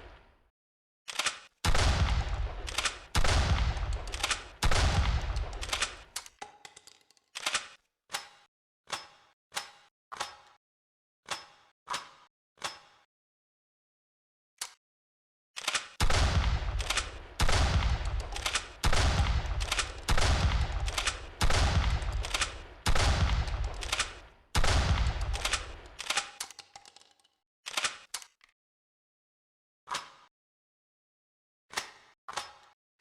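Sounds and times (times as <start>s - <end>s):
shotgun action clicks: 1.1s - 7.8s, 15.6s - 28.3s
shotgun blasts echoing: 1.7s - 6.1s, 16.0s - 26.0s.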